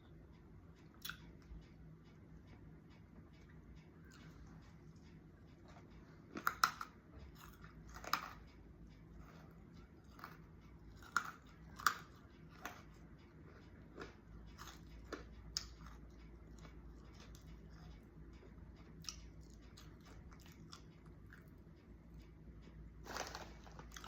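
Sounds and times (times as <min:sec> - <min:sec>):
quiet chewing: 0:00.3 - 0:24.0
crunching hard chips: 0:11.0 - 0:12.1, 0:23.0 - 0:24.0.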